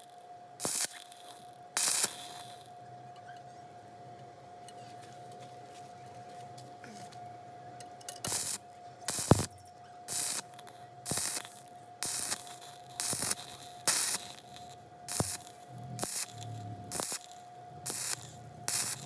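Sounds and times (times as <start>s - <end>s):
welding arc crackling and hissing: 0.0s - 2.8s, 8.2s - 19.0s
faint steady hum: 0.0s - 19.0s.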